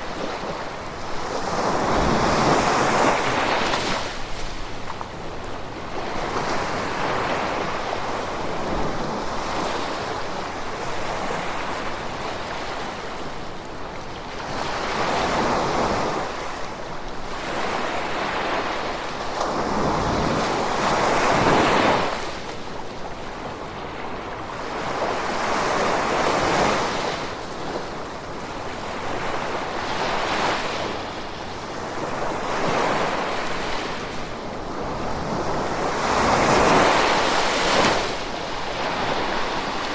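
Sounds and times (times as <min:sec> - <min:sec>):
ocean waves washing onto shore: 0:00.0 - 0:39.9.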